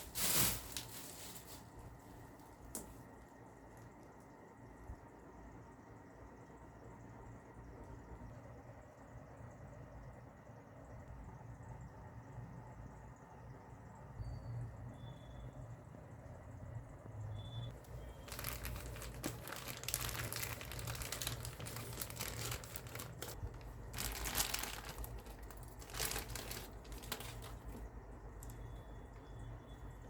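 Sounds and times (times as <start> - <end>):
packaging crinkling: 0.0 - 1.9, 17.8 - 28.8.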